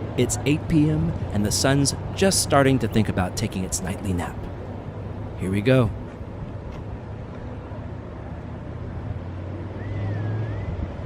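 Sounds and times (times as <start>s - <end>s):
wind buffeting microphone: 0.0s - 11.0s
short wavering whistle: 9.7s - 10.9s.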